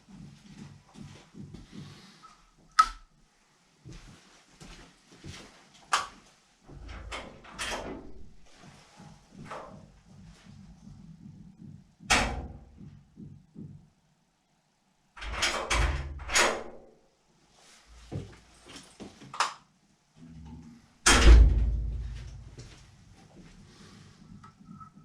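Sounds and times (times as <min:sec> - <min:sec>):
knocks and thumps: 0:08.0 - 0:13.9.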